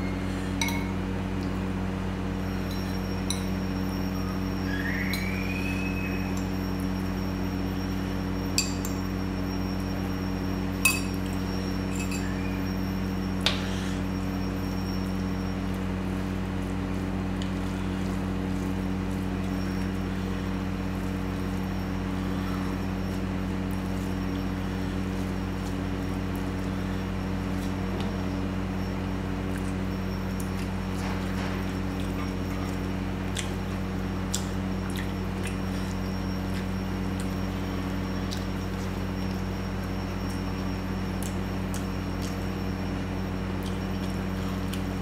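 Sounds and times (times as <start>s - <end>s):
steady low hum: 0.0s - 45.0s
tableware clinking: 0.6s - 1.0s, 10.8s - 11.2s.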